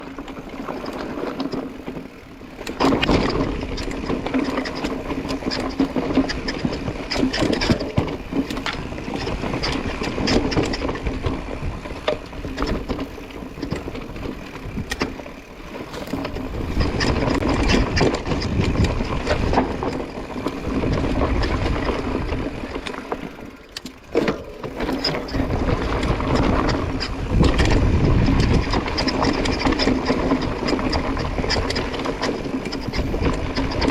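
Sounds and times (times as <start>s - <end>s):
bike rattling over bumps: 0.0s - 33.9s
tyres rushing on dirt: 0.0s - 33.9s
wind on microphone: 16.1s - 22.8s, 24.1s - 33.9s.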